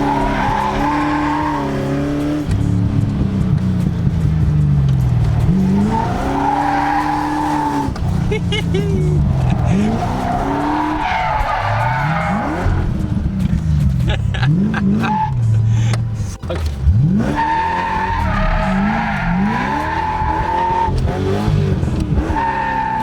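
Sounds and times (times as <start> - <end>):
car engine revving: 0.0 - 23.0
tyres squealing: 5.0 - 13.0, 16.5 - 21.5.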